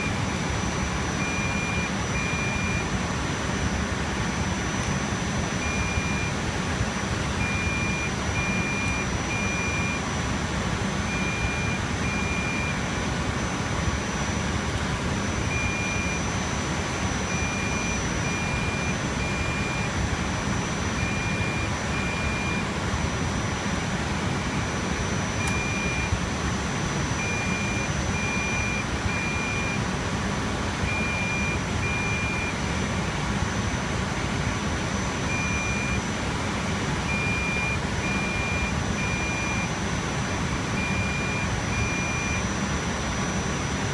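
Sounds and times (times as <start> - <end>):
server cooling fans whining: 0.0 - 43.9
short electronic beeps: 1.2 - 2.9, 5.6 - 6.3, 7.4 - 10.0, 11.1 - 12.8, 15.4 - 16.6, 17.3 - 19.9, 20.6 - 22.7, 24.6 - 26.2, 27.0 - 29.8, 30.9 - 32.6, 35.3 - 36.1, 37.1 - 39.8, 40.8 - 43.4.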